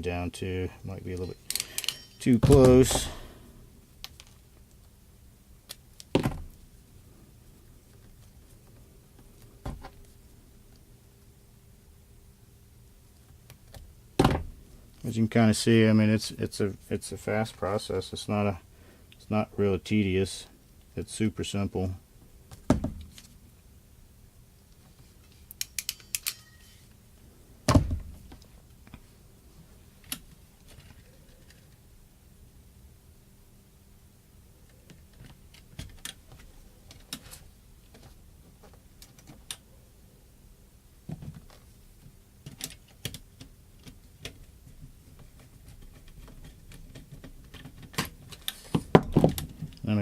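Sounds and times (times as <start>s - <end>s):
tools clattering: 1.2s - 3.2s, 25.6s - 26.9s.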